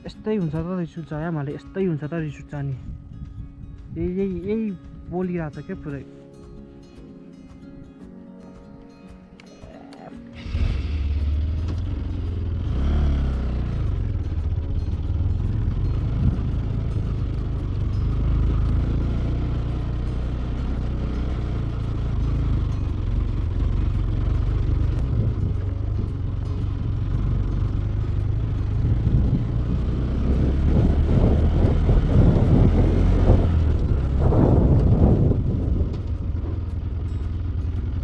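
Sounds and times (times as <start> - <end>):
motorcycle engine running: 0.0 - 6.7, 9.7 - 38.0.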